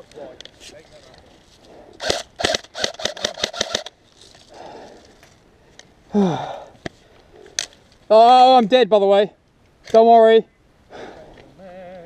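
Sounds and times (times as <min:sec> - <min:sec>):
airsoft gun rapid firing: 0:02.0 - 0:03.9.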